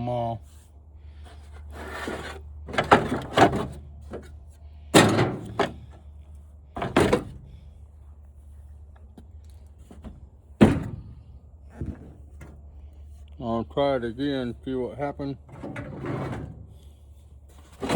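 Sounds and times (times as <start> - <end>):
sharp knocks and clunks: 4.9 - 6.0, 6.8 - 7.4, 9.8 - 12.6.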